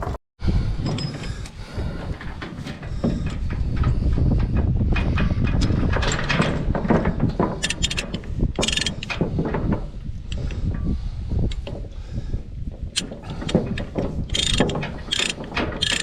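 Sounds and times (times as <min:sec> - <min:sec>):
chain rattling against metal: 0:02.2 - 0:09.7, 0:13.0 - 0:16.0.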